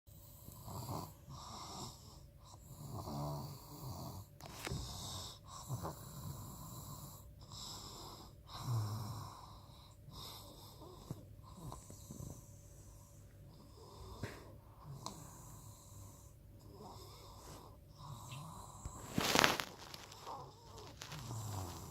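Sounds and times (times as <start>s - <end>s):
person snoring: 13.6s - 21.9s.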